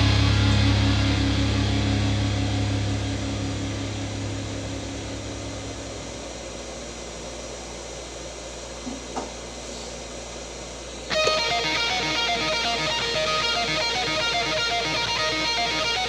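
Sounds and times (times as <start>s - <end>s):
guitar music: 0.0s - 5.9s, 11.1s - 16.0s
small fan whirring: 0.0s - 16.0s
background music: 11.1s - 16.0s.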